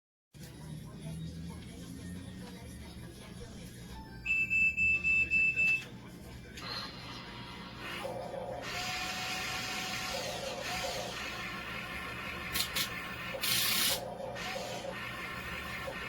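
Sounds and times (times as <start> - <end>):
toy truck motor whirring: 7.8 - 16.0.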